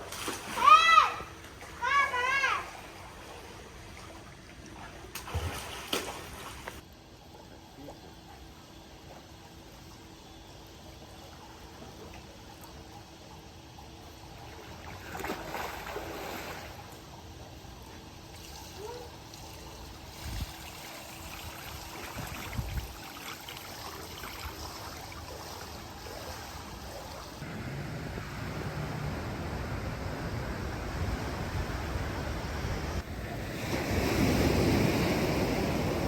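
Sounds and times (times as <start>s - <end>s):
water running and trickling: 19.3s - 27.4s.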